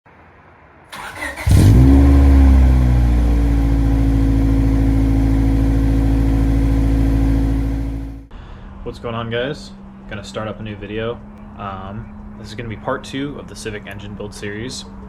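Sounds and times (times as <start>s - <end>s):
car engine starting and idling: 0.9s - 8.3s.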